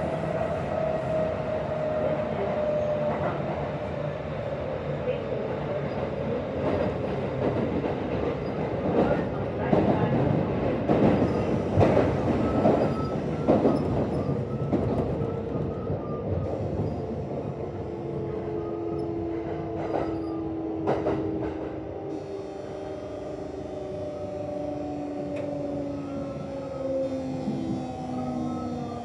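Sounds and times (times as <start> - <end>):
train wheel noise: 0.0 - 29.0
rail-joint clacks: 5.8 - 17.6, 18.3 - 22.4, 24.6 - 28.9
train inverter whining: 10.8 - 29.0.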